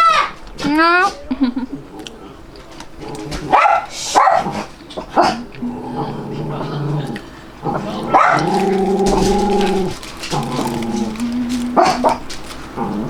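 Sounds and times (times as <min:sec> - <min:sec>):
dog whining and howling: 0:08.0 - 0:13.0.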